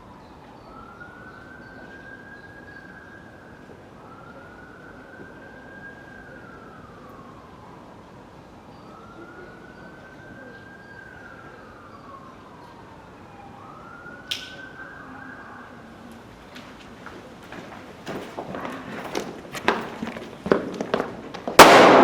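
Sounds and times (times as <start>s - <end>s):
siren wailing: 0.0s - 16.0s
sharp crack: 14.3s - 14.7s, 21.5s - 22.0s.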